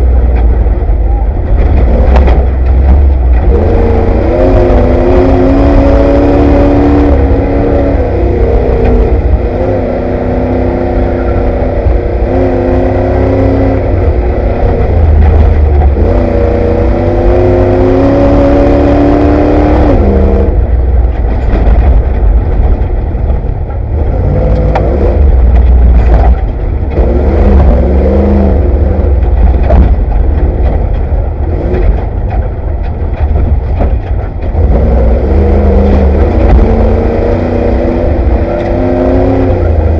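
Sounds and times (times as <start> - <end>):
engine revving from inside cabin: 0.0 - 39.9
heavy low rumble: 0.0 - 39.9
clattering knocks: 29.2 - 35.0.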